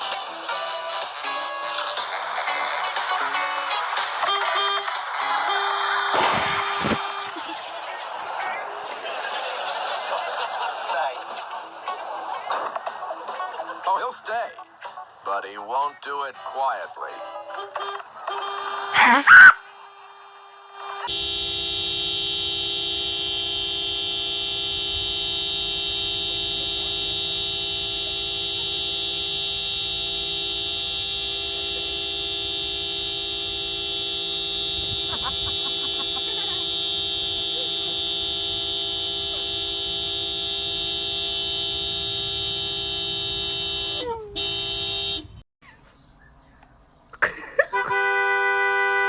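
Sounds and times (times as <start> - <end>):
car horn long steady note: 4.3 - 7.4, 17.6 - 19.0, 19.8 - 45.4, 47.7 - 49.0.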